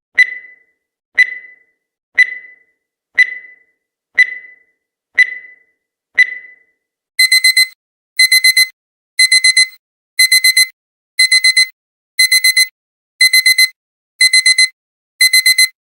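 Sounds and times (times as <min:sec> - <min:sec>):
timer beep: 0:00.2 - 0:15.8
timer alarm quick high beeps: 0:07.2 - 0:15.8.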